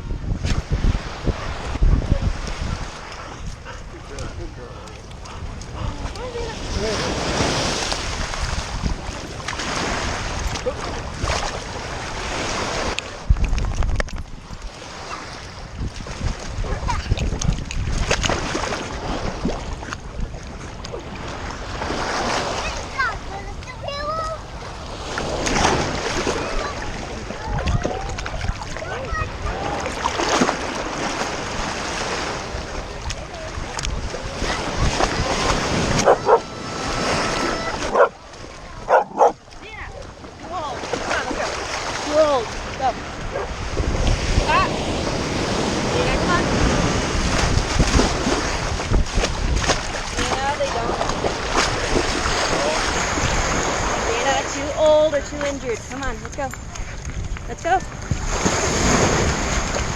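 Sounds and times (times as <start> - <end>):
ocean surf: 0.0 - 59.9
waves washing on a beach: 0.0 - 59.9
wind buffeting microphone: 0.0 - 59.9
dog barking: 36.0 - 38.2, 38.8 - 39.4.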